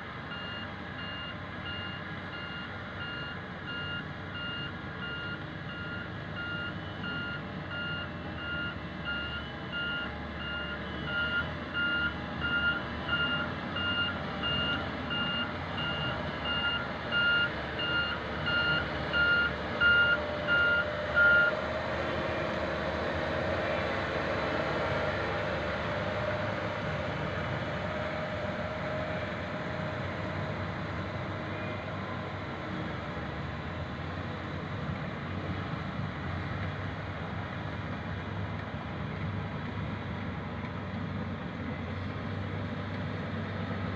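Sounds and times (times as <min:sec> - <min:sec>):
diesel engine running: 0:00.0 - 0:43.9
reversing alarm beeping: 0:00.3 - 0:21.6.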